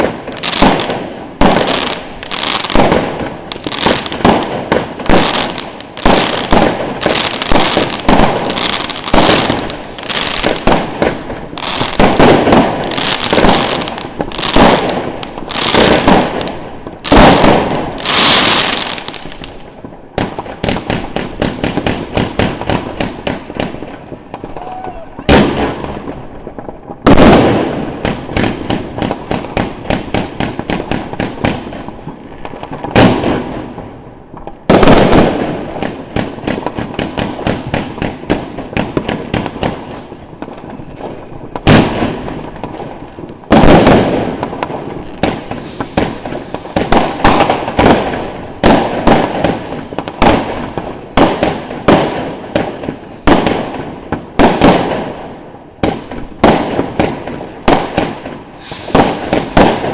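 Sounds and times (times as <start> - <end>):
fireworks launching and bursting: 0.0 - 59.9
falling whistles: 47.4 - 53.3.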